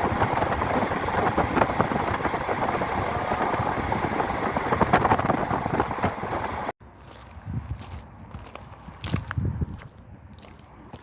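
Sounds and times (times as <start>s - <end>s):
vehicle engine: 0.0s - 6.7s
road noise: 0.0s - 11.0s
wind noise: 0.0s - 11.0s.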